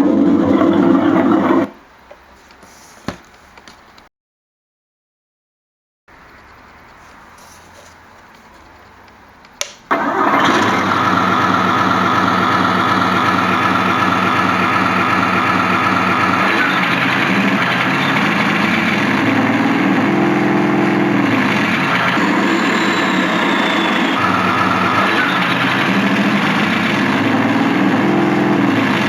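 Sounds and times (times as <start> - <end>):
tank engine starting and running: 0.0 - 1.7, 6.1 - 29.0
click: 8.7 - 9.9.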